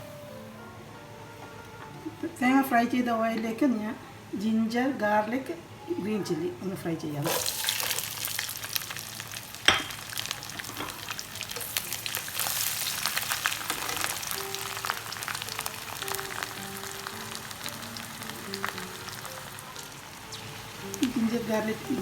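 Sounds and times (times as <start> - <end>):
soft background music: 0.0 - 22.0
sizzling with crackling pops: 7.2 - 22.0.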